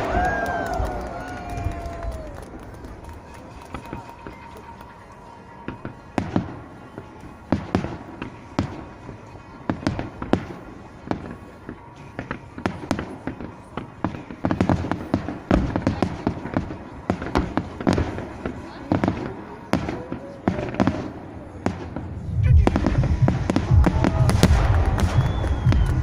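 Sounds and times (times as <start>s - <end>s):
firework shells bursting: 22.7s - 26.0s.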